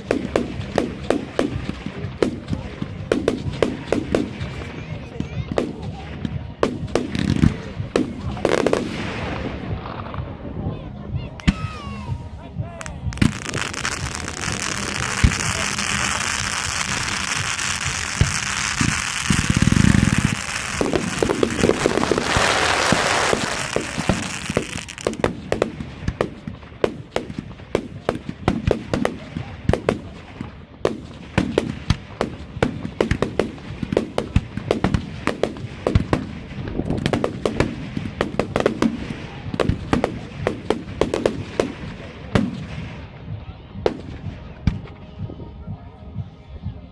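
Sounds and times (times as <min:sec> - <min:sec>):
rapid firework cracks and bangs: 0:00.0 - 0:10.4, 0:12.8 - 0:43.1
firework hissing rush: 0:13.2 - 0:25.5.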